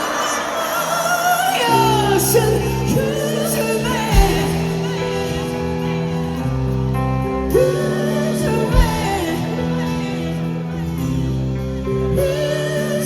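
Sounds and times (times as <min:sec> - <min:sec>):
live rock band playing: 0:03.2 - 0:13.0.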